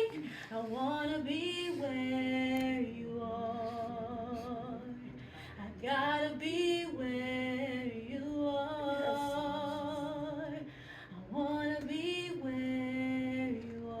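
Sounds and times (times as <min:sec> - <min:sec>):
woman singing unaccompanied: 0:00.0 - 0:14.0.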